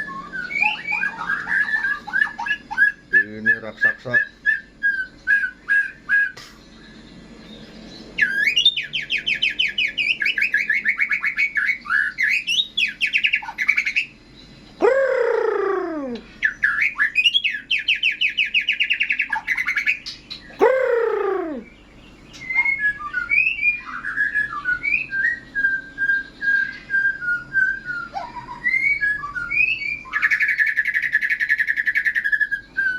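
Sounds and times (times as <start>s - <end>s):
songbird singing: 0.0s - 32.9s.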